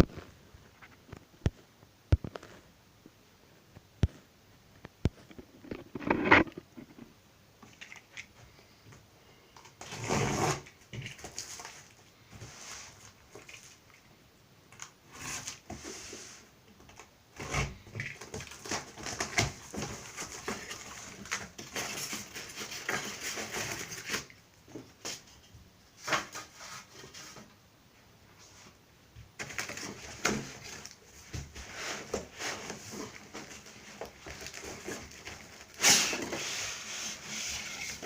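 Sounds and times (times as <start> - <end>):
rustling and knocking: 3.6 - 9.0, 29.1 - 38.0.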